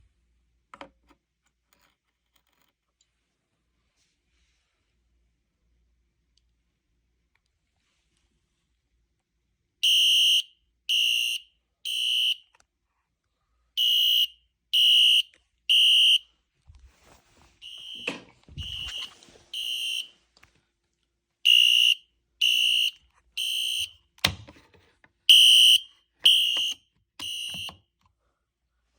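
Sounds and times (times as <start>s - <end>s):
fire alarm horn beeping: 9.8s - 12.5s, 13.8s - 16.2s, 17.6s - 20.2s, 21.4s - 24.0s, 25.3s - 27.8s.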